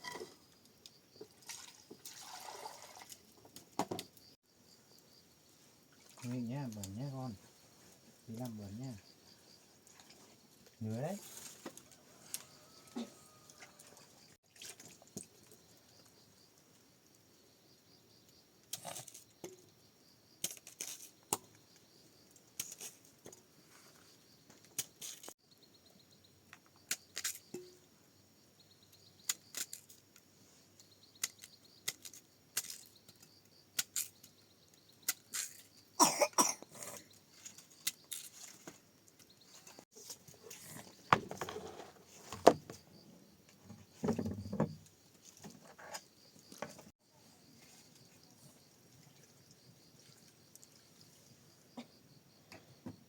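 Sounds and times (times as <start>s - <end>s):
insects chirring: 0.0s - 53.0s
objects being handled: 37.2s - 42.8s.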